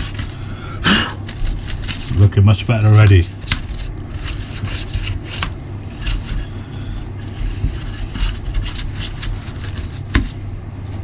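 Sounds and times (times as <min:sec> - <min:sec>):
rubbing and scrubbing strokes: 0:00.0 - 0:10.5
steady low hum: 0:00.0 - 0:11.0.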